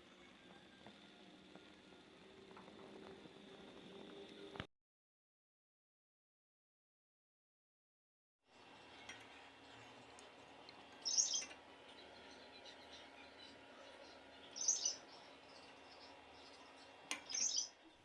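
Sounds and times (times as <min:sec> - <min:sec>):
low background hum: 0:00.0 - 0:04.7, 0:08.5 - 0:18.0
small bird chirping: 0:11.0 - 0:17.8.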